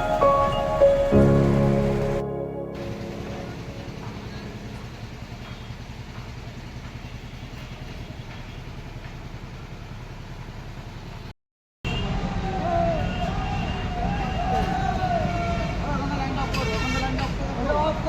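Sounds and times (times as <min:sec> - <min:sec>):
engine idling: 0:02.8 - 0:11.3.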